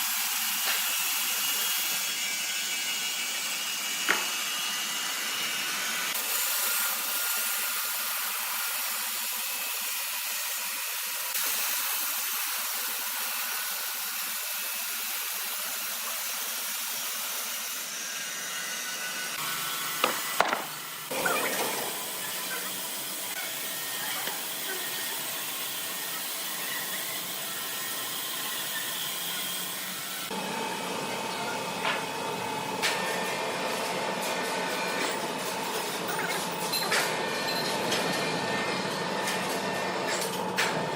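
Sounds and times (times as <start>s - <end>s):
saw cutting through logs: 0.0s - 37.4s.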